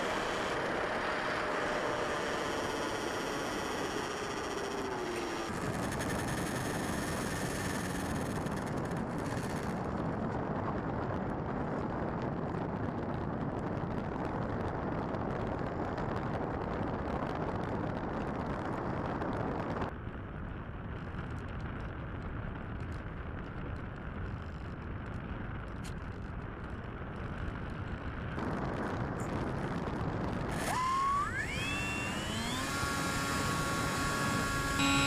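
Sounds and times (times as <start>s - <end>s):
faint high whine: 0.0s - 9.9s, 28.4s - 35.0s.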